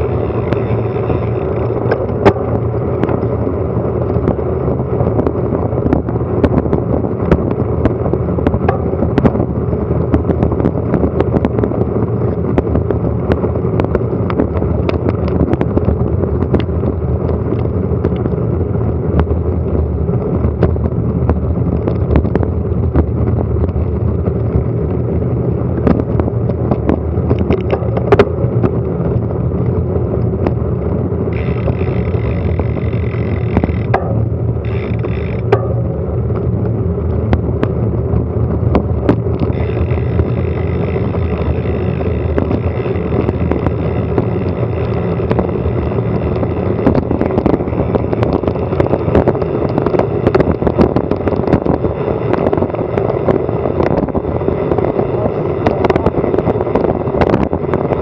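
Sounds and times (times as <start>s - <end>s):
high steady whine: 0.0s - 58.0s
wind buffeting microphone: 0.0s - 58.0s
small rattles and knocks: 25.8s - 52.7s.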